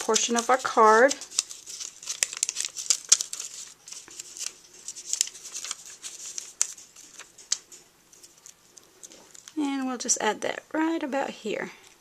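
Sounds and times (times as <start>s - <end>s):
paper peeling off backing: 0.0s - 9.6s.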